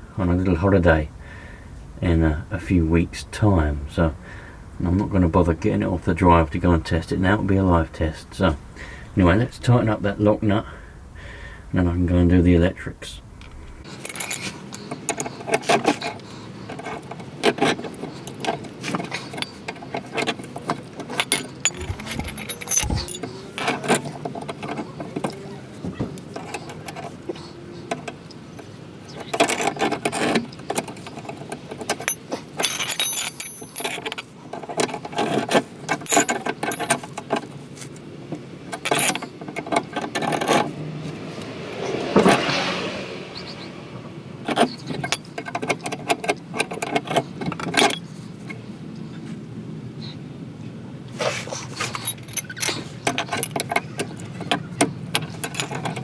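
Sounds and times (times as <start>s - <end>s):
metal tools clinking: 13.9s - 15.8s, 18.3s - 24.8s, 31.1s - 37.5s, 38.7s - 40.5s, 47.6s - 48.0s, 51.8s - 56.0s.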